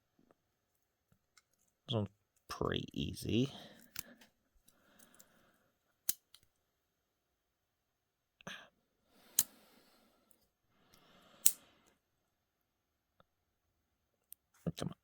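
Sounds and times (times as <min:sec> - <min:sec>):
pocket knife light clicks: 0:06.1 - 0:06.4
pocket knife tools snapping: 0:06.1 - 0:06.4.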